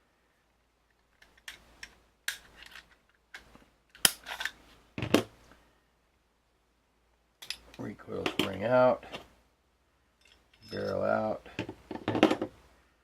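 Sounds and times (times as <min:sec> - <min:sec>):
pistol parts clicking and scraping: 0:00.9 - 0:04.6, 0:07.4 - 0:09.3, 0:10.2 - 0:11.7.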